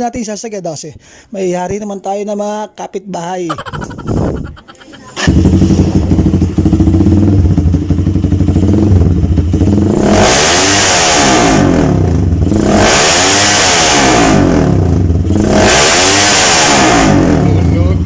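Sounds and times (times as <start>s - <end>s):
loud motorcycle engine revving: 5.2s - 18.0s.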